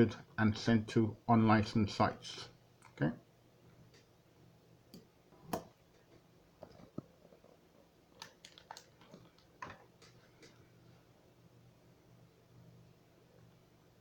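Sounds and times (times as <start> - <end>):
low steady hum: 0.0 - 14.0
faint clicks and knocks: 4.9 - 10.7.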